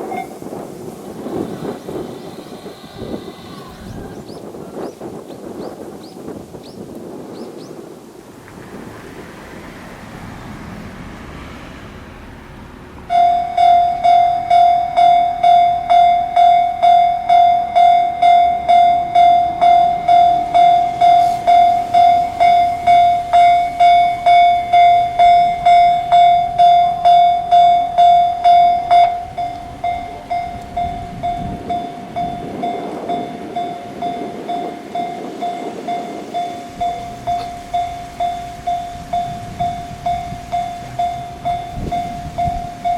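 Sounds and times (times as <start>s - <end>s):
wind noise: 0.0s - 42.9s
level crossing alarm clanging: 13.1s - 42.9s.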